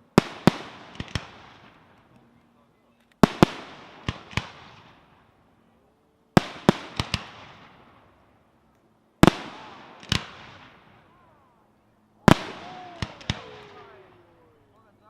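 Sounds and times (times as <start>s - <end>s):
firework shells bursting: 0.0s - 2.3s, 3.0s - 5.4s, 6.4s - 11.1s, 12.2s - 14.7s
small firework cracks: 0.0s - 14.9s.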